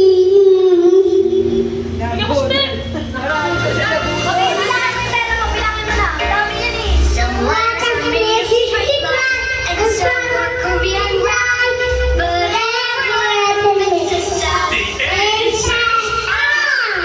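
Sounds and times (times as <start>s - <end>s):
backing music with bass beat: 1.7s - 12.7s.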